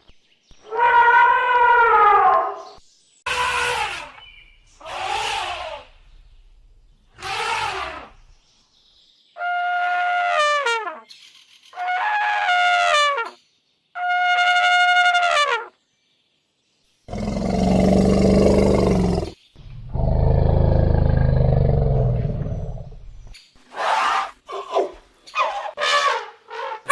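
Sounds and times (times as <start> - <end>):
elephant rough calls: 3.3 - 4.2, 4.8 - 5.9, 7.2 - 8.2, 17.1 - 22.9
elephant trumpeting: 3.3 - 4.2, 4.8 - 5.9, 7.2 - 8.2.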